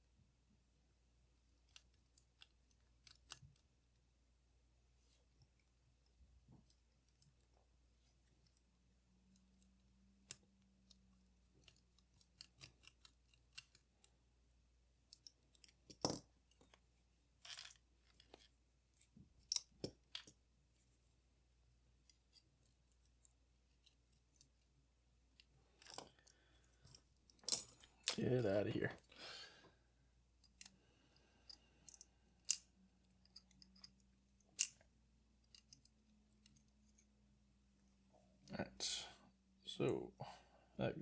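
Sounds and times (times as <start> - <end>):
small metal parts clicking: 11.6 - 14.1, 17.4 - 18.5, 31.5 - 34.8, 35.4 - 37.0.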